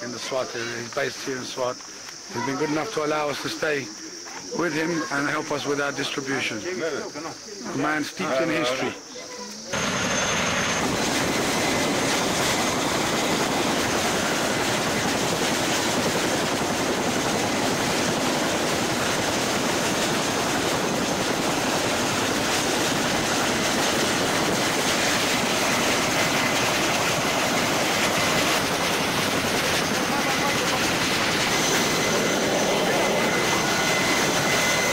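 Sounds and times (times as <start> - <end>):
helicopter engine and rotor roar: 8.2 - 34.9.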